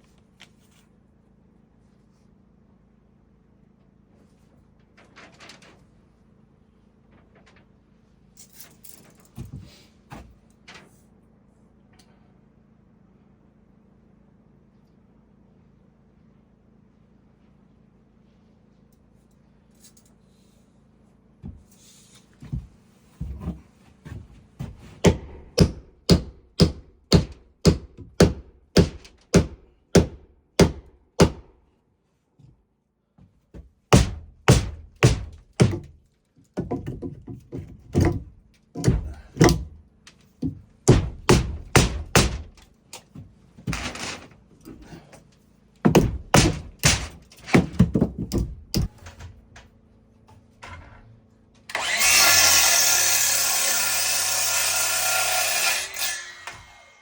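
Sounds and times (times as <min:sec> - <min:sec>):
hammer driving nails into wood: 0:25.0 - 0:31.6, 0:33.9 - 0:36.0, 0:36.6 - 0:39.8, 0:40.4 - 0:42.7, 0:45.9 - 0:49.2.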